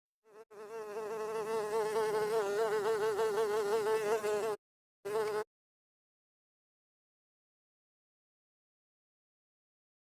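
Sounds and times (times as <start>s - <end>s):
fly buzzing: 0.3s - 5.5s.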